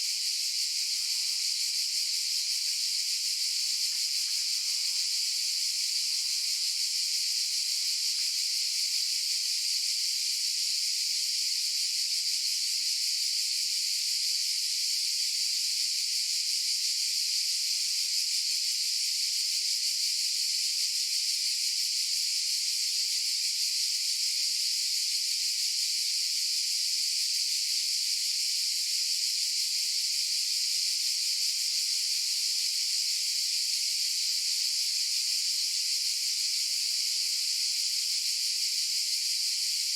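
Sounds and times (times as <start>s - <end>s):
cicadas buzzing: 34.1s - 37.6s.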